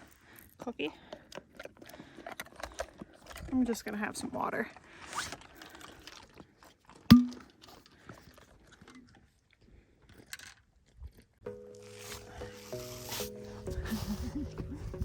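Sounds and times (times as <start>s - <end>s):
dog crunching a treat: 0.0s - 3.6s, 4.8s - 9.5s
sharp ringing knock: 7.1s - 7.4s
water bottle handled: 7.1s - 7.5s.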